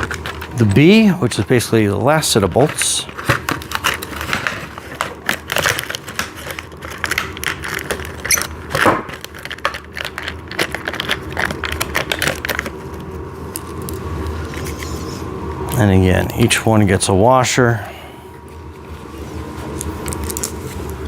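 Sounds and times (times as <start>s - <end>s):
plastic packaging crinkling: 0.0s - 1.1s, 2.4s - 15.0s, 19.0s - 21.0s.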